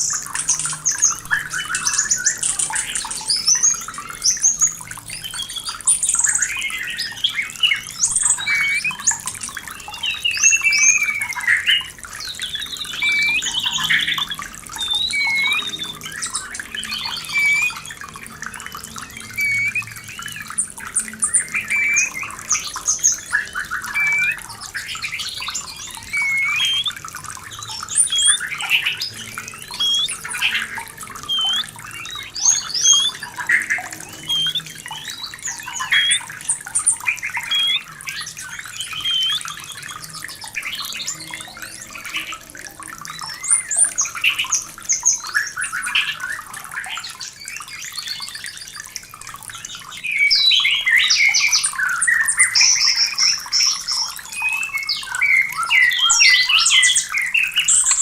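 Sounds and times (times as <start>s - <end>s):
trickling water: 0.0s - 58.0s
bird singing whistled notes: 5.2s - 18.0s, 18.6s - 42.4s.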